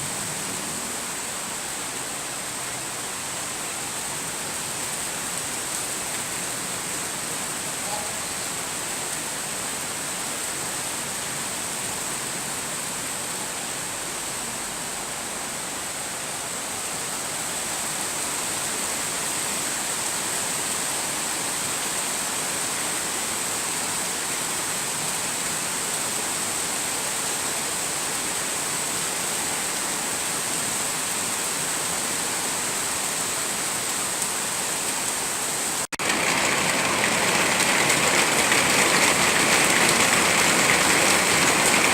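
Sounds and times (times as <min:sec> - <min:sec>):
steady rain hiss: 0:00.0 - 0:41.9.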